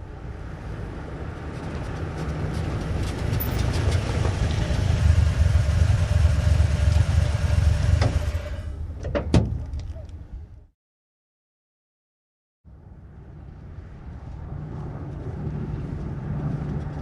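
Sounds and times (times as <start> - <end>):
truck engine rumbling: 0.0 - 10.7.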